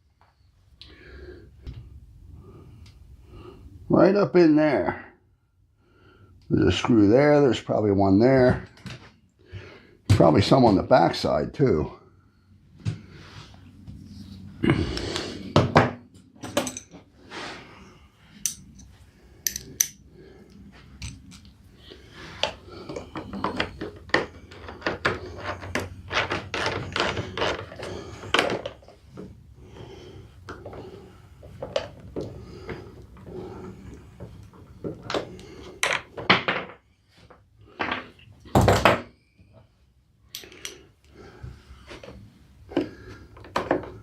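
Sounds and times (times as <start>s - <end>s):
screwdriver knocking and scraping: 22.4s - 29.4s.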